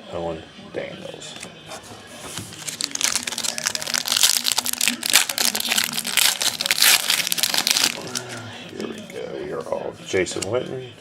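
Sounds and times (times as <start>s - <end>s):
foil wrapper crinkling and tearing: 2.5s - 8.7s.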